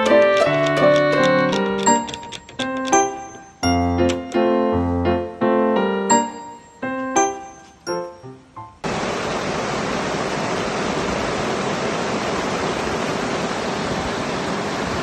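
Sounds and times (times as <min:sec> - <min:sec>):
piano music: 0:00.0 - 0:08.9.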